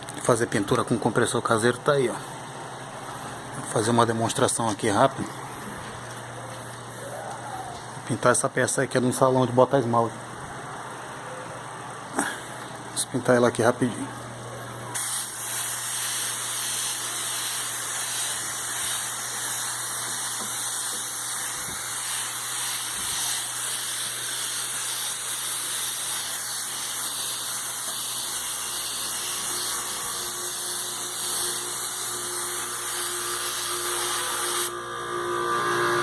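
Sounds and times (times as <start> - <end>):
paint spray gun hissing: 15.0 - 34.7.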